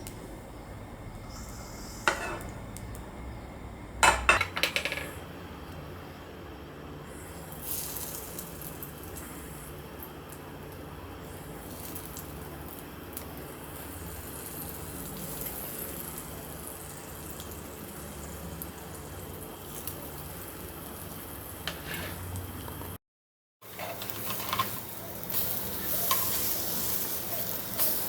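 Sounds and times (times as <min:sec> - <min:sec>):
bread sizzling in a pan: 0:07.1 - 0:22.6, 0:23.6 - 0:28.0.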